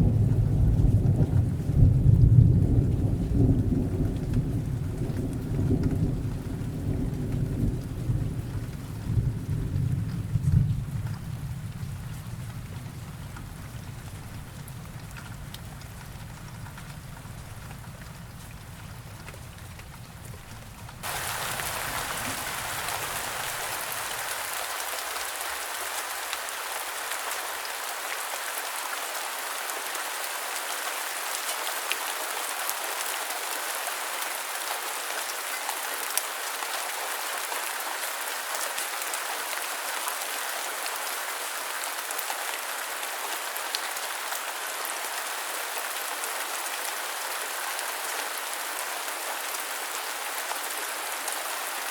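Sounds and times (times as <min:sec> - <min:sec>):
steady rain hiss: 0:00.0 - 0:51.9
raindrop ticks: 0:00.8 - 0:08.9, 0:09.7 - 0:23.0.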